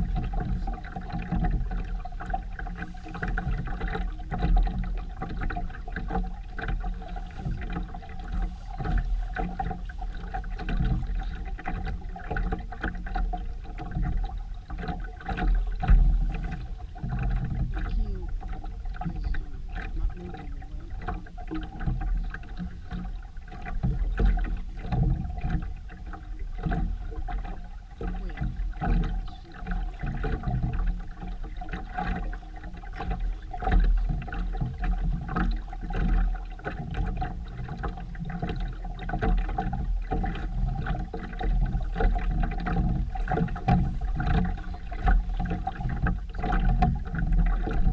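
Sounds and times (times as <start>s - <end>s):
low rumble: 0.0s - 34.1s
water splashing along hull: 0.0s - 47.9s.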